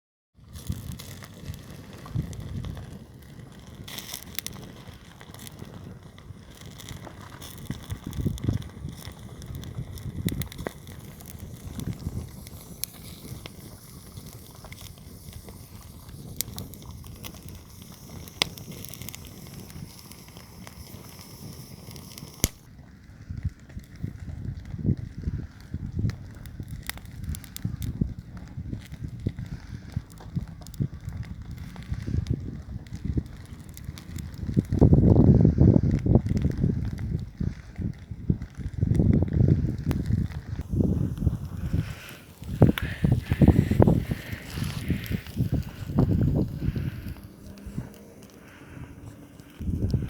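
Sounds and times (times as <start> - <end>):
campfire crackling and popping: 0.4 - 50.0.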